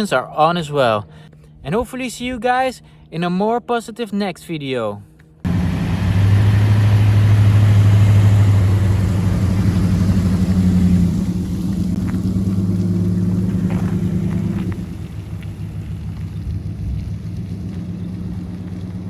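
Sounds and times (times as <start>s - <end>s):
engine running steadily: 5.2s - 19.0s.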